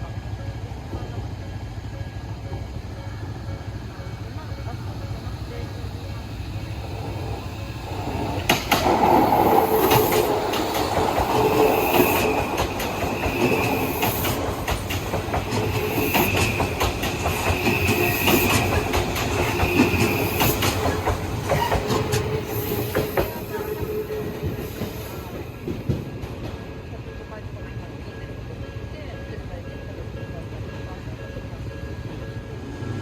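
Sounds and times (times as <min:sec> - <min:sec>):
train wheels clacking over rail joints: 0:02.5 - 0:27.3
high wheel squeal: 0:15.4 - 0:25.4.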